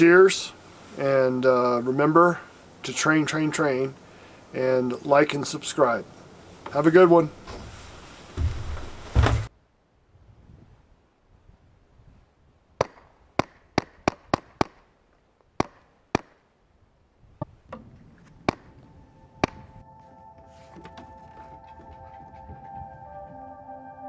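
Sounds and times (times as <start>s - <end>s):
ringing music tones: 18.7s - 24.0s.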